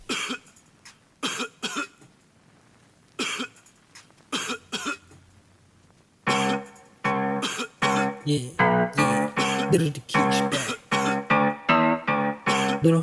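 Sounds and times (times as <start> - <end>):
person coughing harshly: 0.0 - 0.5, 3.2 - 3.6, 7.4 - 8.2, 9.1 - 11.3, 12.5 - 12.9.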